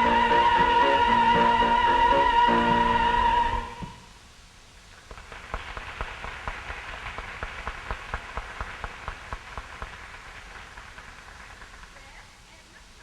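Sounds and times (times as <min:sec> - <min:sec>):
sharp claps nearby: 0:05.0 - 0:12.2
crowd clapping: 0:05.1 - 0:12.2.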